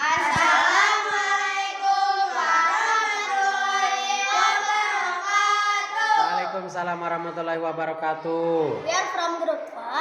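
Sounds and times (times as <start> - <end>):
children singing in unison: 0.0 - 6.5.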